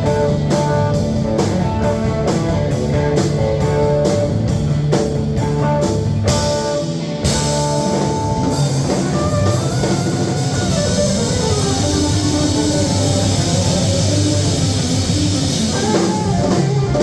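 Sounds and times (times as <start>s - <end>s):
live band playing: 0.0s - 17.0s
loud drum hit: 6.1s - 17.0s.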